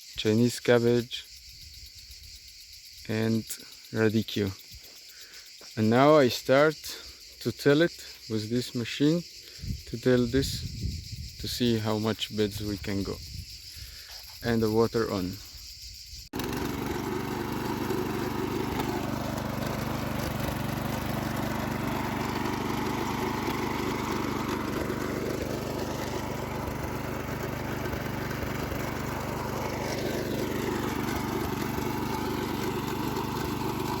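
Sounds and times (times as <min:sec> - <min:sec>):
tiller engine running: 0:16.4 - 0:34.0.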